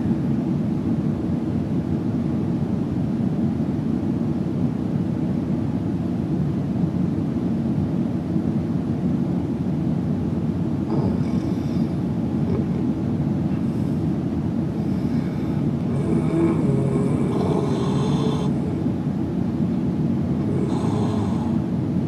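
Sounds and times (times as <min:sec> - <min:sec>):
low droning rumble: 0:10.8 - 0:21.9.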